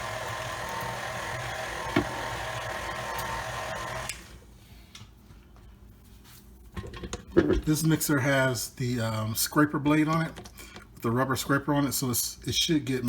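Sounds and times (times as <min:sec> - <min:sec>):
stand mixer whining: 0:00.0 - 0:04.2.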